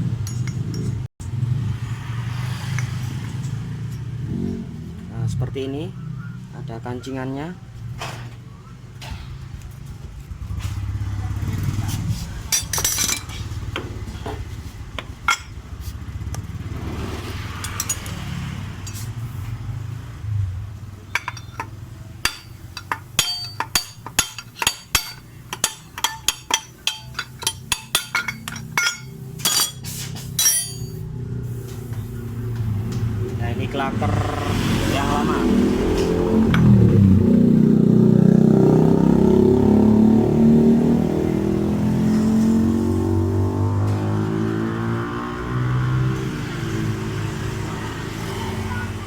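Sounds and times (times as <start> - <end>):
steel tool knocking on metal: 21.2 - 29.8.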